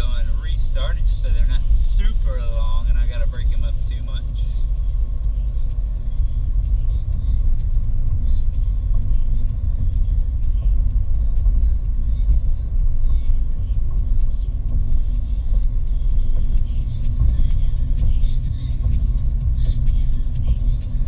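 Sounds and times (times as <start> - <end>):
car tyres and engine rumble: 0.0 - 21.0.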